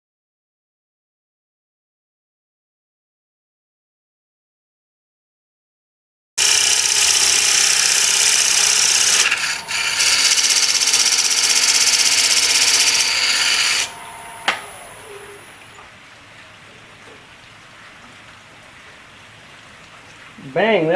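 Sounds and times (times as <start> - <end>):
lathe tool scraping wood: 6.4 - 15.6
lathe running: 6.4 - 15.8.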